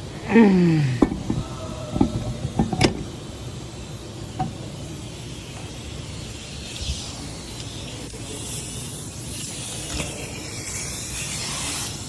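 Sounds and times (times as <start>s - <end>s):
steady background hiss: 0.0s - 12.0s
metallic clinks and knocks: 1.0s - 3.2s.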